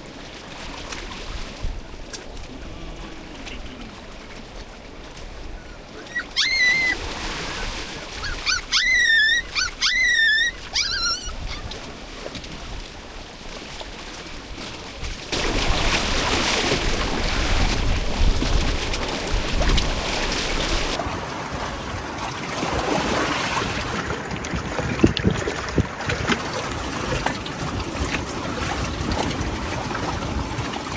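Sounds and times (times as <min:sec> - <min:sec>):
waves and rain rushing: 0:00.0 - 0:30.9
dog whimpering: 0:06.0 - 0:11.8.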